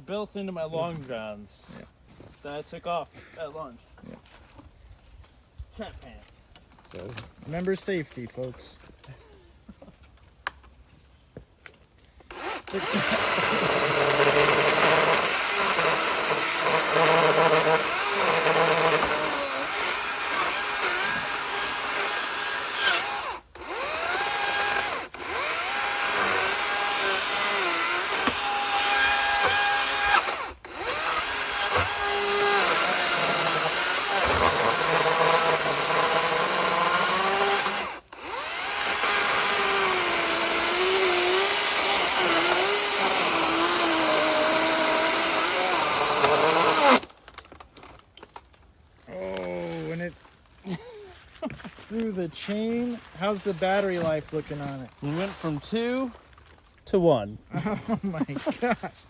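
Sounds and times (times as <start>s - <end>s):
battery chainsaw cutting wood: 12.3s - 47.2s, 51.7s - 56.1s.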